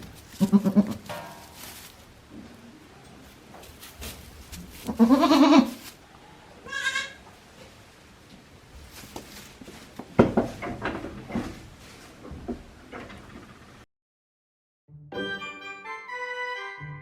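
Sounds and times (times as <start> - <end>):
rustling: 0.0 - 6.1, 7.2 - 13.3
goats bleating: 0.3 - 1.1, 4.8 - 5.8, 6.6 - 7.2.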